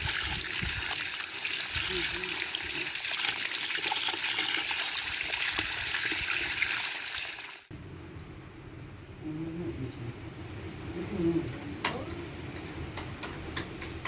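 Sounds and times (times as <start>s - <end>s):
running water splashing: 0.0s - 7.7s.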